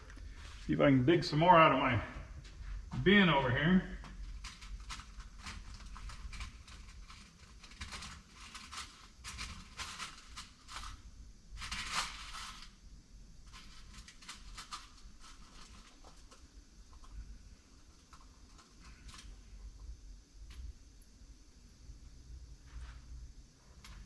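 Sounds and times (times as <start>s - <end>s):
rummaging through small screws: 4.2s - 11.0s.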